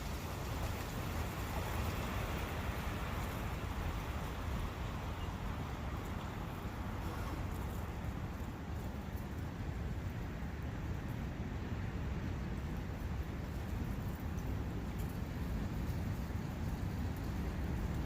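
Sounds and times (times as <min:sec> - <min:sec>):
brook water babbling: 0:00.0 - 0:18.0.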